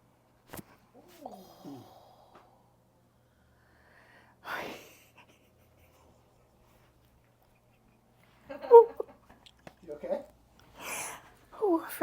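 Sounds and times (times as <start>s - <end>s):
woman moaning: 1.0s - 2.2s.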